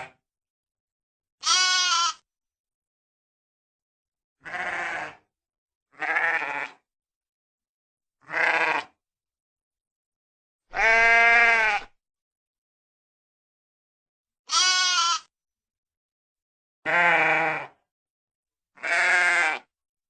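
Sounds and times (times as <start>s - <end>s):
sheep bleating: 1.4s - 2.2s, 4.4s - 5.3s, 5.9s - 6.8s, 8.2s - 9.0s, 10.7s - 11.9s, 14.5s - 15.3s, 16.8s - 17.8s, 18.8s - 19.7s.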